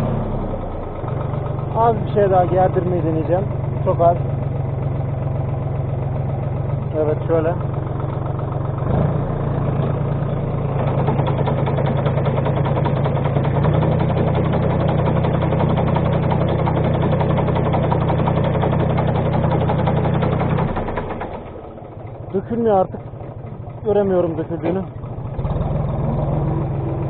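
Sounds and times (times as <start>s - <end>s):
tractor engine drone: 0.0s - 27.0s.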